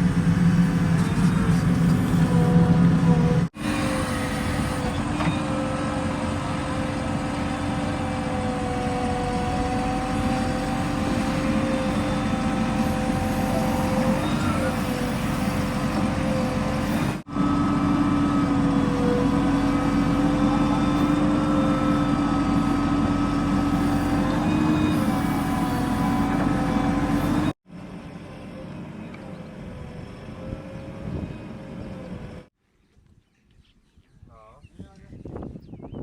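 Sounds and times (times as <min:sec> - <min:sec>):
diesel machinery engine running: 0:00.0 - 0:32.5
held whine: 0:00.0 - 0:32.5.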